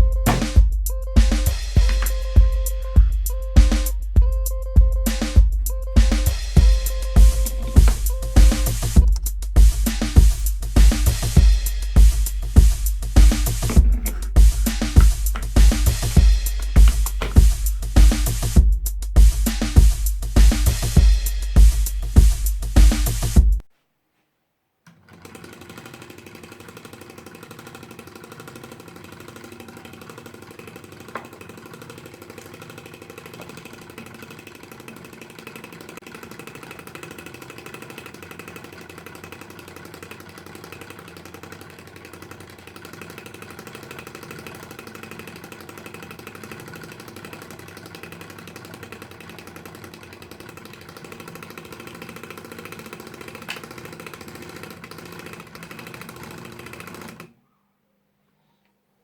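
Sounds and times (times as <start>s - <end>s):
lathe motor running: 0.0s - 18.6s, 25.1s - 57.2s.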